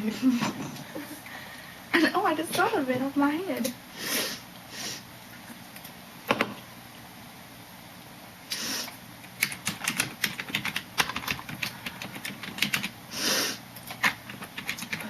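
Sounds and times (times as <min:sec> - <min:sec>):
short hissing noises: 0:08.5 - 0:09.0, 0:13.1 - 0:13.7
rapid irregular clicks and taps: 0:09.2 - 0:13.0, 0:13.8 - 0:15.0.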